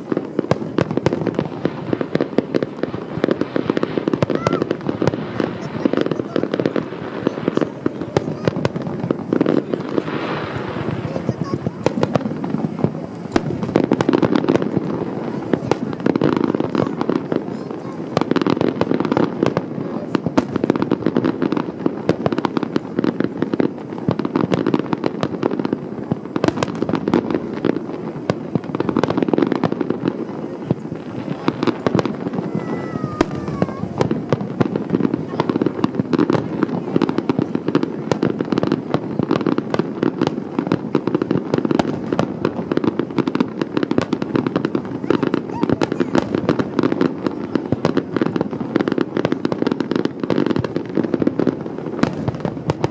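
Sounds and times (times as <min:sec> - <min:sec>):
fireworks bangs and crackling: 0:00.0 - 0:52.9.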